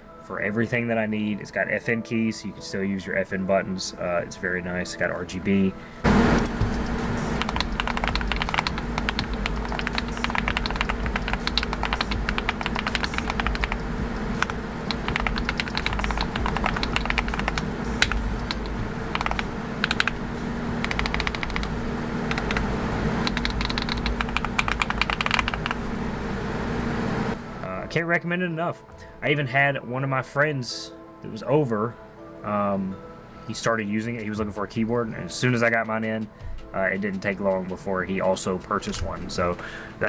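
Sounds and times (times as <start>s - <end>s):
fast keyboard typing: 6.1s - 27.4s.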